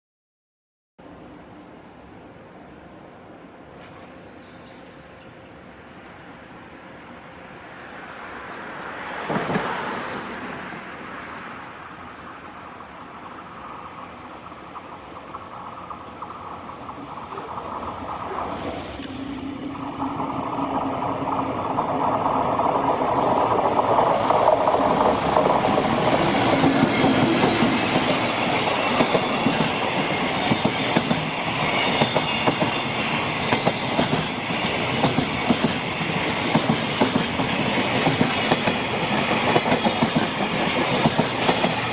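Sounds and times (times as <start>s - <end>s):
freight train rumble: 3.0s - 41.9s
wheels clacking over rail joints: 14.4s - 41.9s.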